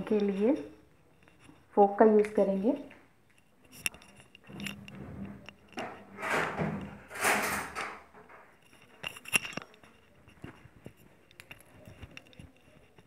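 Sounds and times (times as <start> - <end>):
fork scraping metal tin: 5.8 - 8.1.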